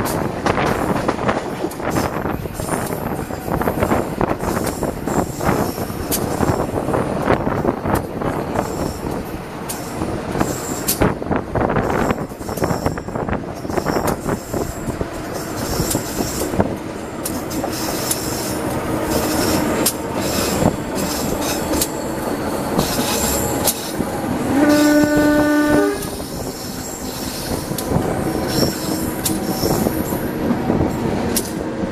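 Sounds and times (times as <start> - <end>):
train wheels clattering over rails: 0.0 - 31.9
high wheel squeal: 8.6 - 11.0, 17.3 - 30.3
locomotive horn: 21.8 - 27.1.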